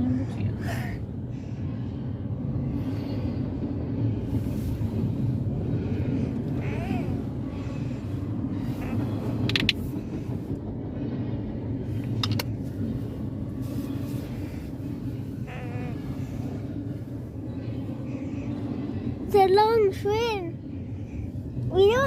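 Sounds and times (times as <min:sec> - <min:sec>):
freight train rumble: 0:00.0 - 0:22.0.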